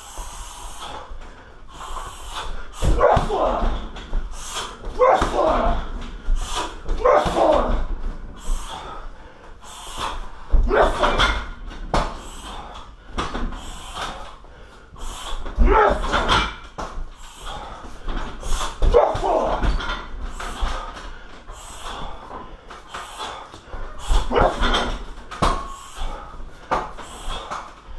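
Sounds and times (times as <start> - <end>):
punches thudding on heavy bag: 2.8 - 4.1, 4.8 - 8.1, 15.5 - 17.6, 18.7 - 21.0
person shouting: 2.9 - 3.7, 5.0 - 5.8, 7.0 - 7.8, 10.7 - 11.1, 15.6 - 16.1.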